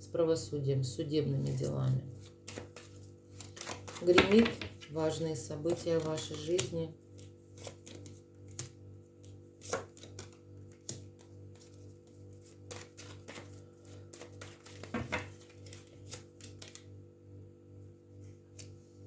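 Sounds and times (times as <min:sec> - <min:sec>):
cards tapping on table: 0:14.8 - 0:15.3.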